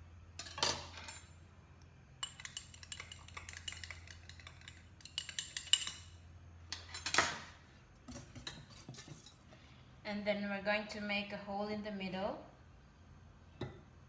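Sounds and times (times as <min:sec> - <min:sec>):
utensil scraping a mixing bowl: 0:08.1 - 0:09.4.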